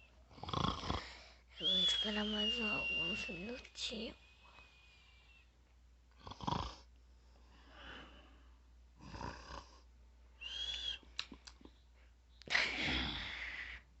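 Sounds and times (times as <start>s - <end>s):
man snoring: 0.3s - 1.2s, 6.2s - 6.8s.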